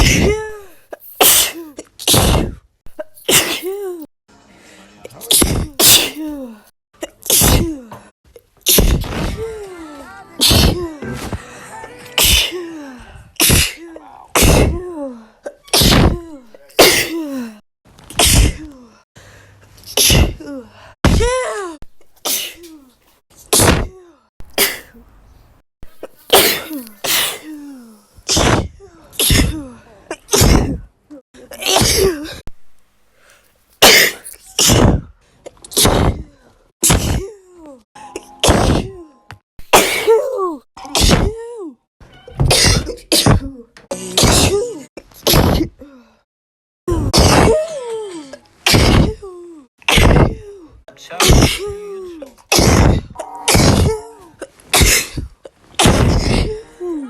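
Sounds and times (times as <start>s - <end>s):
woman sneezing: 0.0s - 4.0s, 5.3s - 6.6s, 7.3s - 8.0s, 10.4s - 10.9s, 12.2s - 12.6s, 13.4s - 14.8s, 15.5s - 16.2s, 16.8s - 17.6s, 20.0s - 20.5s, 25.9s - 28.6s, 29.2s - 30.8s, 33.8s - 35.0s, 39.7s - 41.3s, 42.5s - 43.4s, 48.6s - 49.2s, 49.9s - 50.4s, 51.2s - 56.6s.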